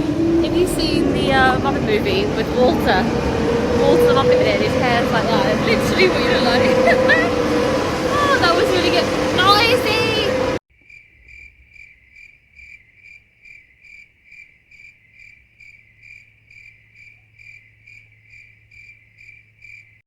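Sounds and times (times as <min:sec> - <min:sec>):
cricket chirping: 0:10.7 - 0:20.0.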